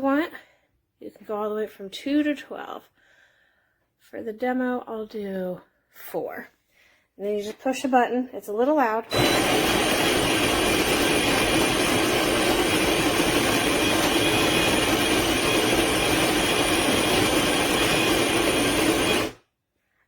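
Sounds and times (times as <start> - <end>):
electric coffee grinder whirring: 9.1 - 19.4.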